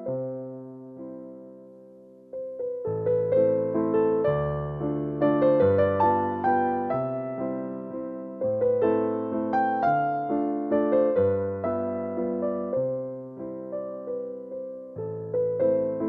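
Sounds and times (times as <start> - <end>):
slow piano chords and melody: 0.0 - 16.0.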